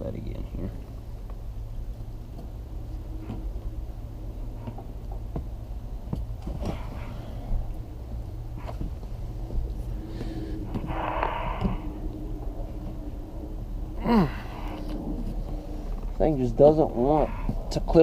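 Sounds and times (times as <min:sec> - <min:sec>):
steady low hum: 0:00.0 - 0:18.0
short breathy noise: 0:09.9 - 0:12.1.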